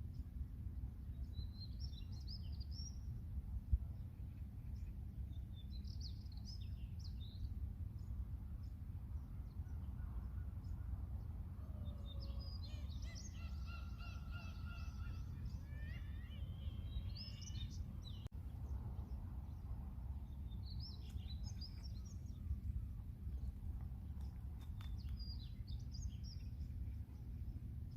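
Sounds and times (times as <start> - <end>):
steady low rumble: 0.0 - 27.9
birds chirping and calling: 11.9 - 18.3.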